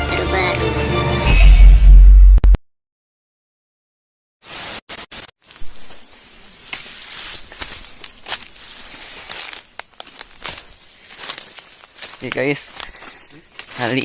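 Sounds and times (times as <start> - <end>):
footsteps in undergrowth: 5.4 - 14.0.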